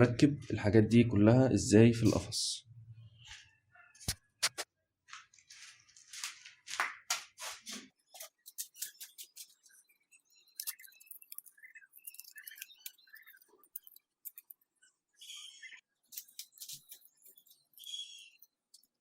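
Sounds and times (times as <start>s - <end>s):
small chirps: 8.0s - 19.0s
small parts clicking and rustling: 8.2s - 14.8s, 16.1s - 19.0s.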